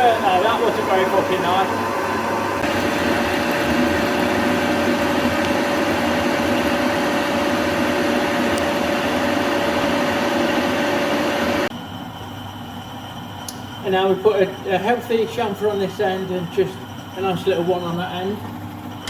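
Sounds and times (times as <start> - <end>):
metal lathe humming and whining: 0.0 - 11.8.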